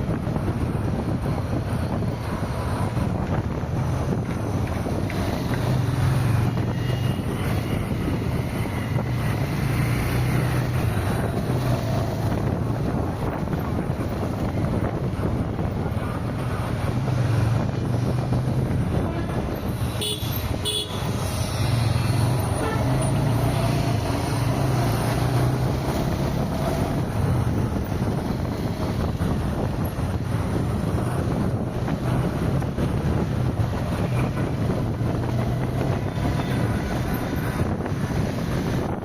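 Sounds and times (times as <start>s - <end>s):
car road and wind noise: 0.0s - 39.0s
vehicle horn beeps: 20.0s - 21.1s.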